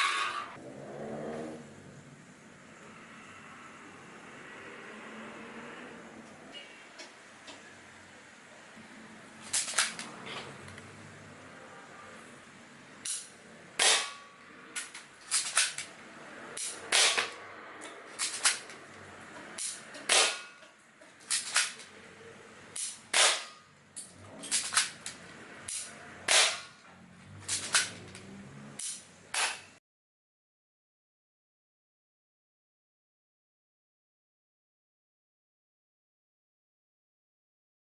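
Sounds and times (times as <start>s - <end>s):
airsoft pistol firing: 13.8s - 14.2s, 16.6s - 17.3s, 19.6s - 20.5s, 22.8s - 23.6s, 26.3s - 26.7s.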